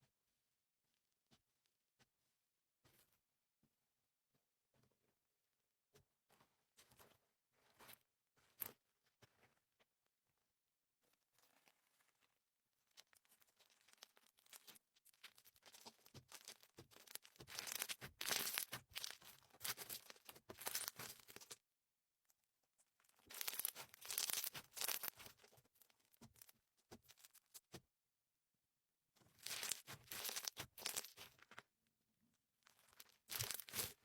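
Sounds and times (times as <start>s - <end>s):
slime crackling and popping: 13.8s - 21.6s, 23.2s - 25.4s, 29.4s - 31.3s, 32.9s - 34.0s
slime squished by hand: 15.3s - 21.4s, 23.3s - 25.4s, 29.4s - 31.3s, 33.2s - 34.0s.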